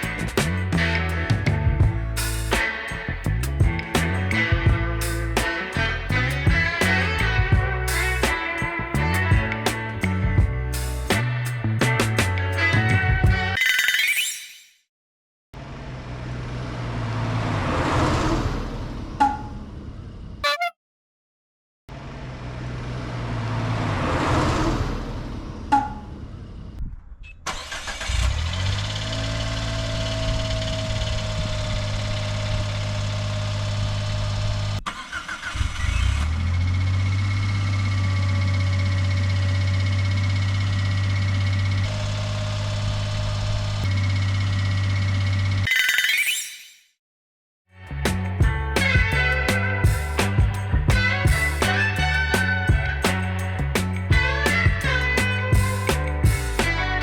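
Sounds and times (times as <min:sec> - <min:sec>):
car engine starting and idling: 0:27.5 - 0:45.7.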